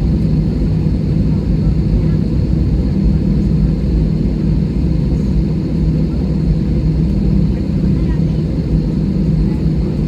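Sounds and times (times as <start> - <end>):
airliner engines rumbling in cabin: 0.0 - 10.0.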